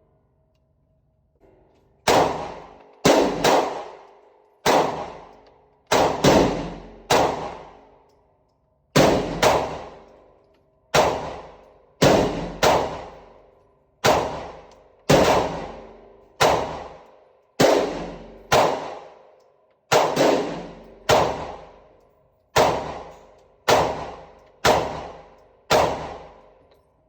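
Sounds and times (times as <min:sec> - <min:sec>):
gunshots with echo: 0:02.0 - 0:07.8, 0:09.0 - 0:10.0, 0:10.9 - 0:13.3, 0:14.0 - 0:17.0, 0:17.6 - 0:19.2, 0:19.9 - 0:21.8, 0:22.6 - 0:23.1, 0:23.7 - 0:26.4.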